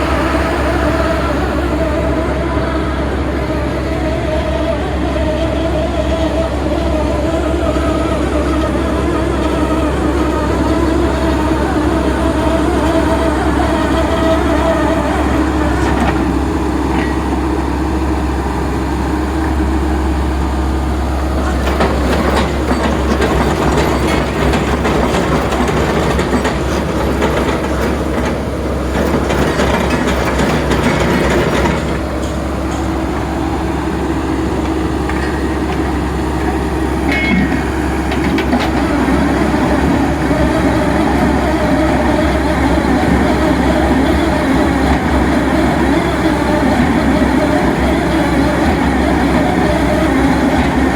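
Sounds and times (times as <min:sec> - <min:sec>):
drill rig machine hum: 0:00.0 - 0:50.9
drill rattling and clatter: 0:21.4 - 0:33.3.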